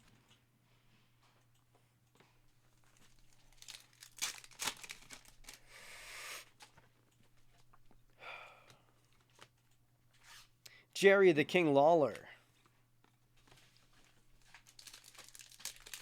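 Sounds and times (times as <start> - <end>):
card packaging tearing and crinkling: 3.0 - 5.6, 14.4 - 16.0.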